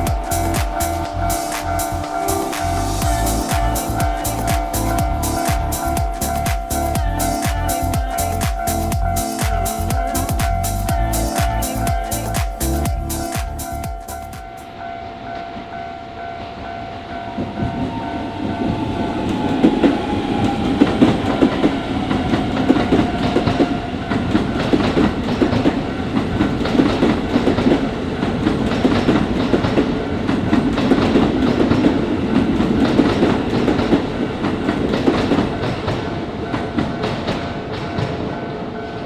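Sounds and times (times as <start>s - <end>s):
train rumble: 0.0s - 15.6s.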